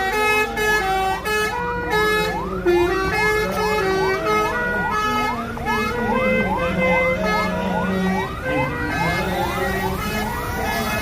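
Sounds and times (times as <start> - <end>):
bus multi-tone horn tune: 0.0 - 11.0
rising siren-like whoop: 4.0 - 11.0.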